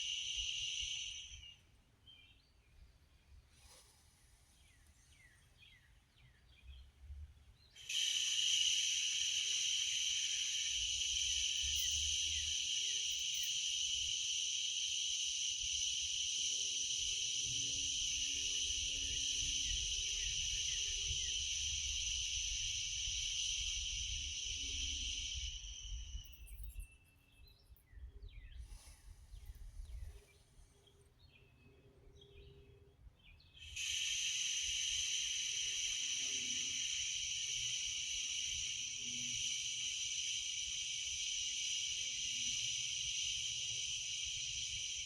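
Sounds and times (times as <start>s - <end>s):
high insect drone: 0.0s - 1.6s, 7.8s - 26.9s, 33.7s - 45.0s
small birds chirping: 4.5s - 45.0s.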